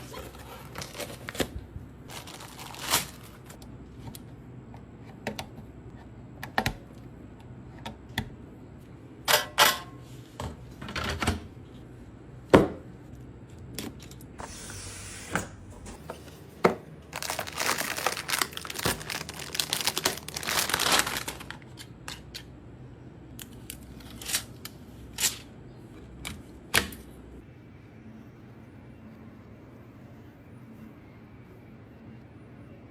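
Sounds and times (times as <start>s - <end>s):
plastic packaging crinkling: 0.0s - 3.6s, 17.0s - 21.9s.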